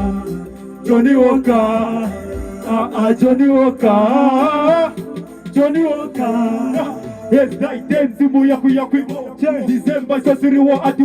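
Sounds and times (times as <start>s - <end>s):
man singing: 0.0s - 11.0s
music backing track: 0.0s - 11.0s.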